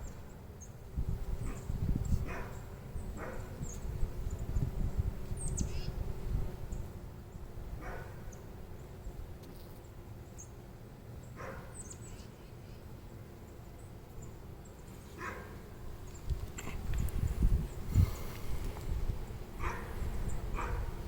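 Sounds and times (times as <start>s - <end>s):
honeybees humming: 0.0s - 21.0s
wind rumbling on microphone: 0.8s - 7.0s, 15.9s - 21.0s
birds chirping: 5.4s - 6.0s, 11.2s - 18.7s
dog barking faintly: 15.2s - 15.6s, 19.6s - 20.9s.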